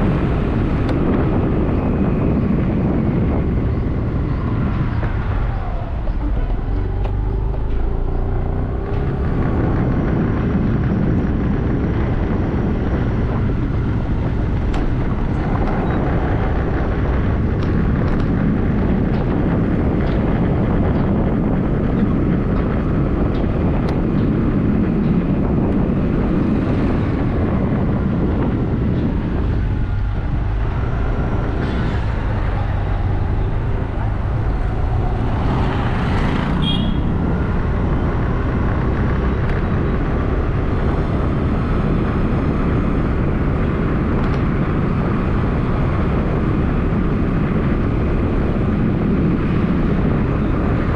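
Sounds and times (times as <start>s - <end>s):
car road noise rumble: 0.0s - 50.9s.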